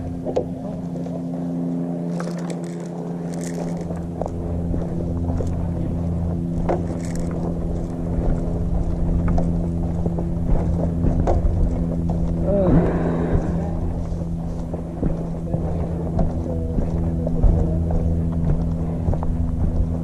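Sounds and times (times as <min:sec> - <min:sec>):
engine running steadily: 0:00.0 - 0:20.0.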